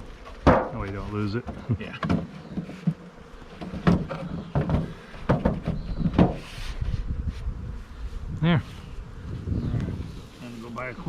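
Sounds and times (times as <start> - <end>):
wooden knocks and clunks: 0.3 - 6.5.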